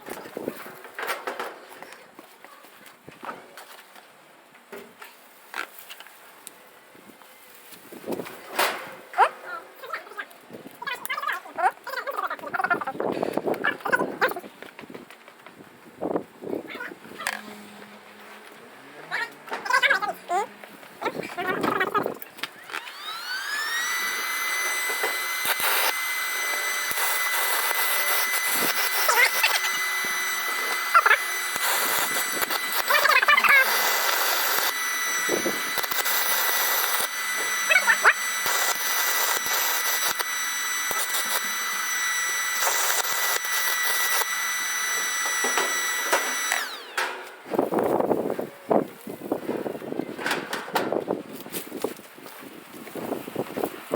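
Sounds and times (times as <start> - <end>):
power tool whining: 20.6 - 50.9.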